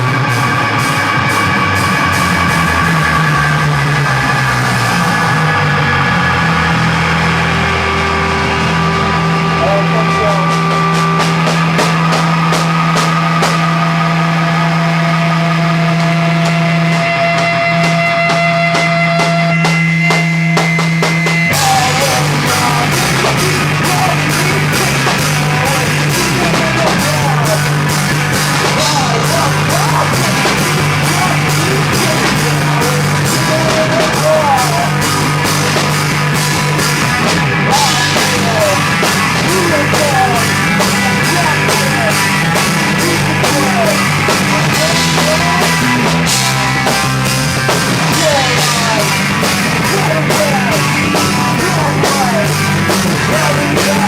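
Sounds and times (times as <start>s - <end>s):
drum kit fast beat: 0.0s - 54.0s
live rock band playing: 0.0s - 54.0s.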